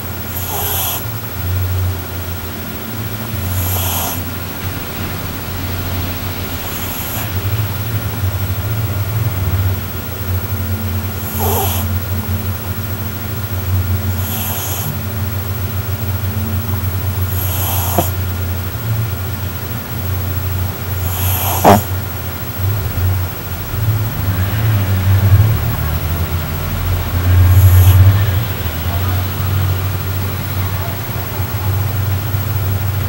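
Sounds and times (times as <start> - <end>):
dog snoring: 0.0 - 12.6, 13.2 - 18.7, 20.5 - 22.0, 23.7 - 29.7.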